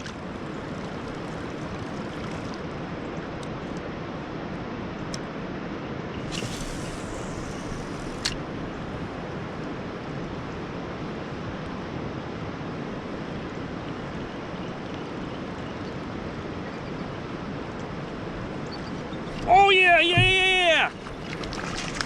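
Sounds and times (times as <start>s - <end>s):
river water rushing: 0.0s - 3.7s, 19.1s - 22.0s
sharp click: 6.2s - 8.4s.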